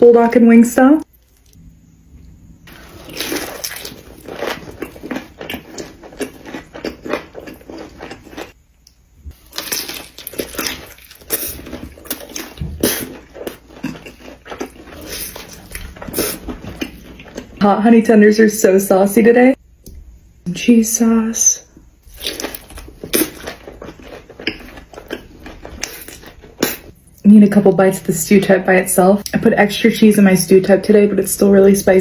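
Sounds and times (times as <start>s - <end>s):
wet chewing and slurping: 2.7s - 8.6s, 9.3s - 17.6s, 22.0s - 27.2s.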